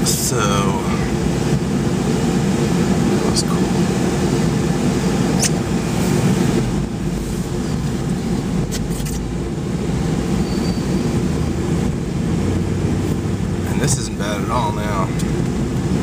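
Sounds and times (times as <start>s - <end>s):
car interior engine and road noise: 0.0s - 16.0s.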